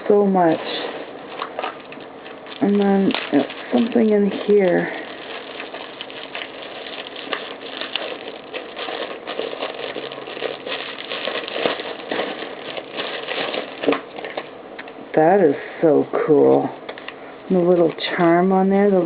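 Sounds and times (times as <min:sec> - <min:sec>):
gift packaging rustling and crinkling: 0:00.0 - 0:14.6.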